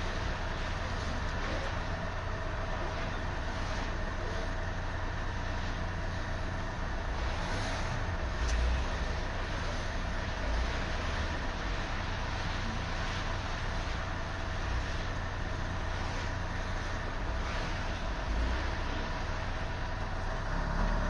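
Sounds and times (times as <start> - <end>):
car engine and road noise: 0.0 - 21.0.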